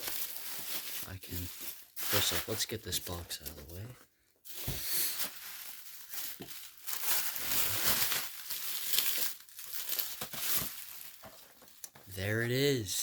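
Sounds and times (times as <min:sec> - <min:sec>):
packaging crinkling and rustling: 0:00.0 - 0:12.3.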